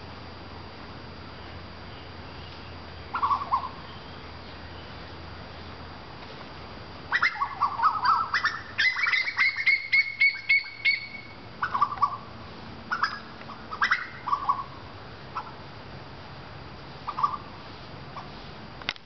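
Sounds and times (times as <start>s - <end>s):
bird singing loudly: 3.1s - 4.9s, 7.1s - 12.2s, 12.9s - 14.8s.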